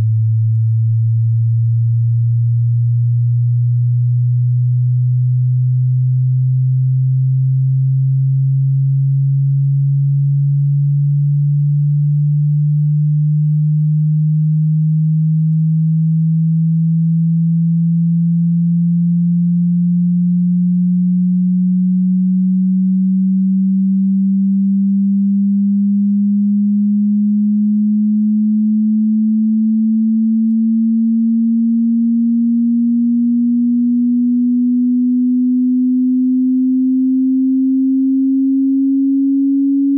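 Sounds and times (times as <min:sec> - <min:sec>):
sine tone sweeping upward: 0:00.0 - 0:39.9.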